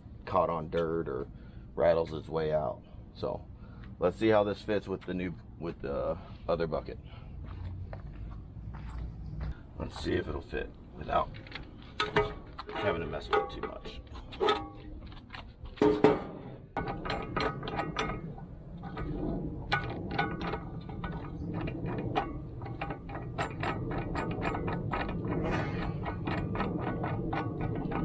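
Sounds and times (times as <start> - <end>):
loud metal knock: 15.8 - 18.1, 23.1 - 28.0.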